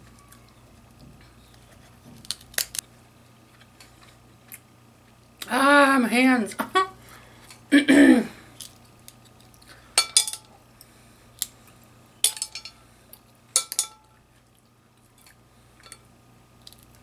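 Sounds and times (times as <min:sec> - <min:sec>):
cutlery clinking on plate: 0:13.6 - 0:14.1.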